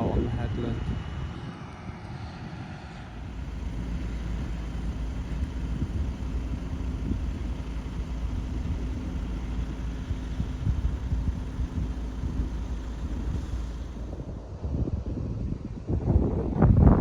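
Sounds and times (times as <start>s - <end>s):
tractor engine rumbling: 3.2s - 14.6s, 16.7s - 17.0s.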